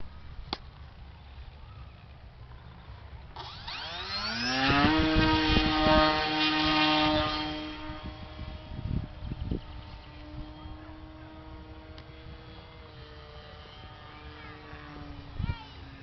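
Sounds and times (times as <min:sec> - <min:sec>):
electric motor whine: 0:03.4 - 0:16.0.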